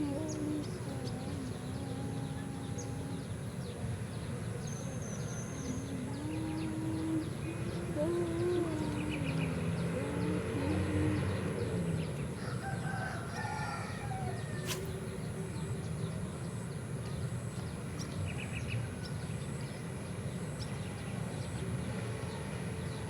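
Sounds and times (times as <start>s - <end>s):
rooster crowing: 12.4s - 15.0s.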